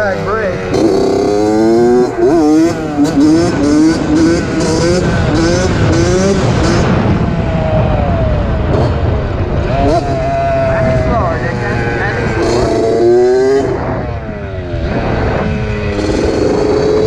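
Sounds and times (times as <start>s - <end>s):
dirt bike engine revving: 0.0s - 17.0s.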